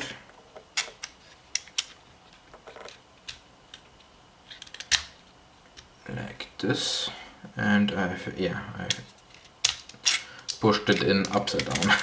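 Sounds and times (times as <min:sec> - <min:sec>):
small metal parts clicking: 0:09.6 - 0:12.0.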